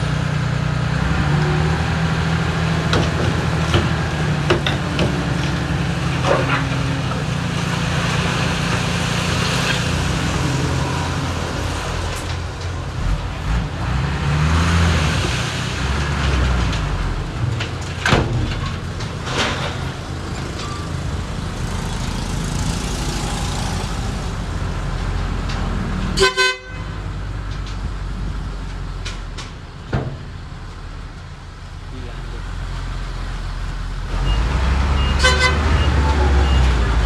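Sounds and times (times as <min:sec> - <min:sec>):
diesel engines rumbling: 0:00.0 - 0:37.0
vehicle horn toot: 0:26.2 - 0:26.9, 0:35.0 - 0:36.0.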